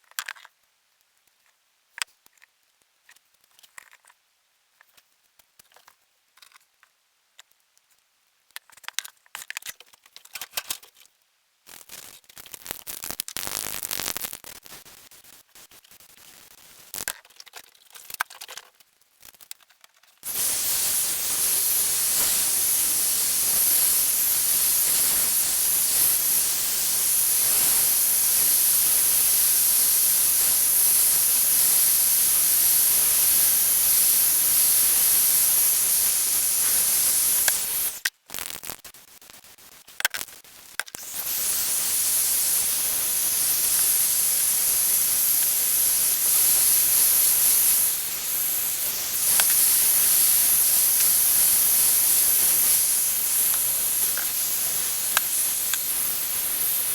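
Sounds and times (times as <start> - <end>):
hissing spray: 20.2 - 56.9.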